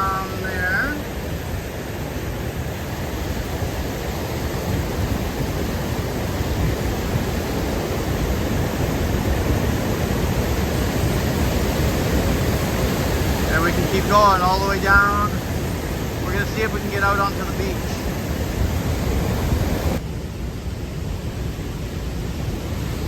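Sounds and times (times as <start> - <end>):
person yelling: 0.0 - 1.0
waterfall rushing: 0.0 - 20.6.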